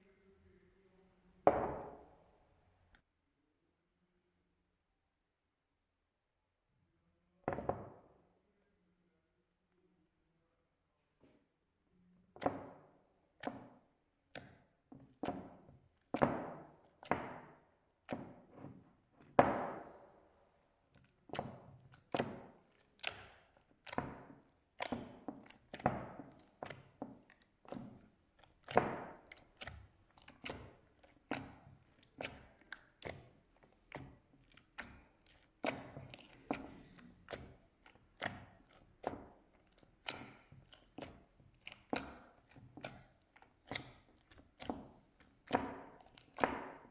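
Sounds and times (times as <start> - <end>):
slime being worked: 12.2 - 46.9.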